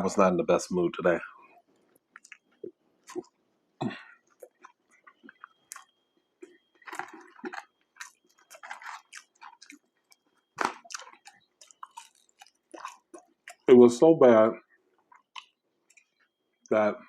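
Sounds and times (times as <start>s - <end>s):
chewing with wet mouth smacks: 1.6s - 3.4s, 4.2s - 13.7s, 15.0s - 16.3s.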